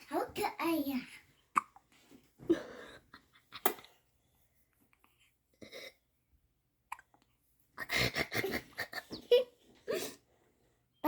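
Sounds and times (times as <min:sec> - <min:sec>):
small child hiccupping: 0:06.9 - 0:07.2.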